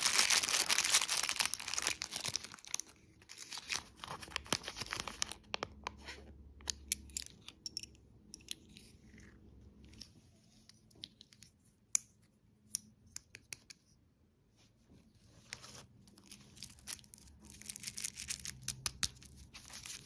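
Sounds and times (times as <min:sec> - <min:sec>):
candy crunching and crackling: 0:00.0 - 0:05.8, 0:16.1 - 0:20.0.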